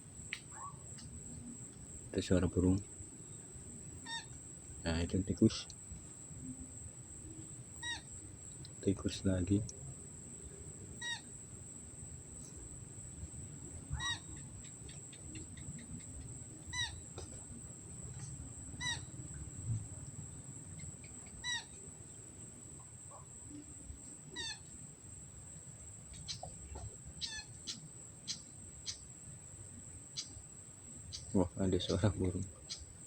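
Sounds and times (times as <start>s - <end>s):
small animal squeaky call: 4.1s - 4.3s, 7.8s - 8.1s, 11.0s - 11.2s, 14.0s - 14.3s, 18.8s - 19.0s, 24.4s - 24.6s, 27.2s - 28.4s.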